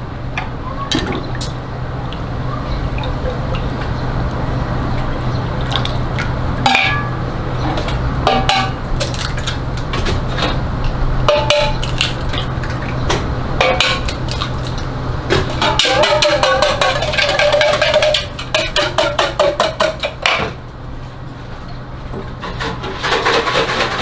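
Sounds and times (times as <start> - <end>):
steady low hum: 0.0 - 22.9
metal utensils clinking and scraping: 15.4 - 20.0, 22.4 - 24.0.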